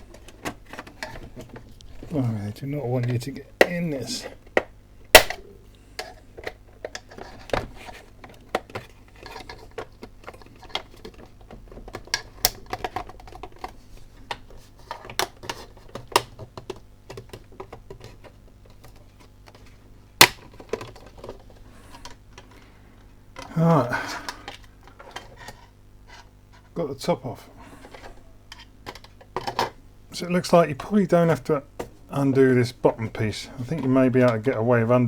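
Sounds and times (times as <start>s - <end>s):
sharp plastic snap: 4.6s - 5.5s, 20.2s - 20.5s.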